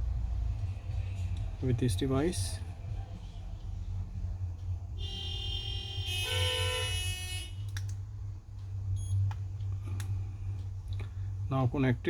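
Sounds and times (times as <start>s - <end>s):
steady low hum: 0.0s - 12.0s
vehicle horn: 5.0s - 7.7s
sharp clicks: 7.6s - 8.0s.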